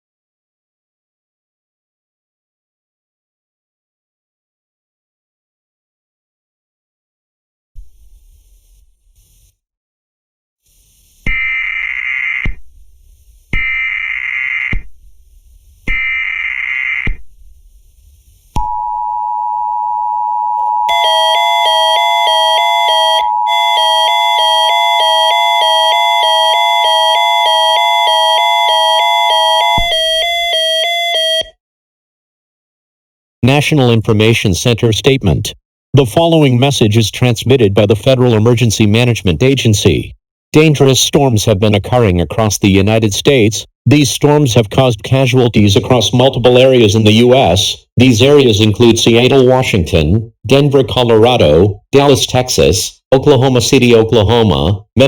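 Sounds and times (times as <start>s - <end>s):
screechy digital data bursts: 11.2s - 12.4s
steady alert tone: 18.6s - 31.4s
chime-like stepped tone melody: 18.6s - 31.5s.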